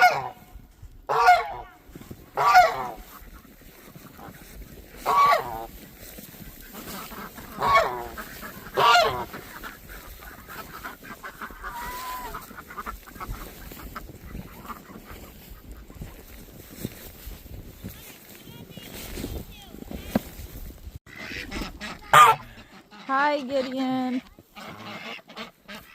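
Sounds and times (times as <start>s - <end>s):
goose honking: 0.0s - 16.1s, 21.1s - 25.9s.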